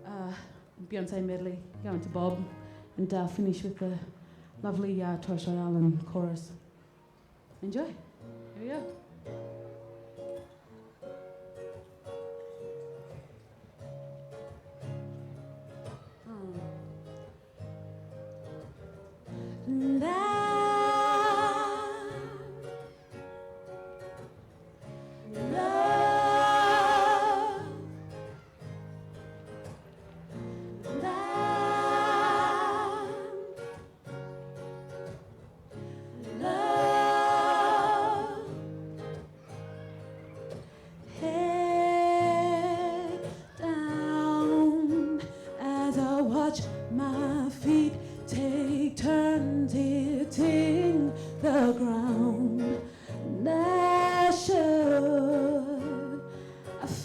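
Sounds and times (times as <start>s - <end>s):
guitar chords: 8.1s - 57.0s
vocal group singing: 19.7s - 22.8s, 25.1s - 28.2s, 30.4s - 34.0s, 36.0s - 39.2s.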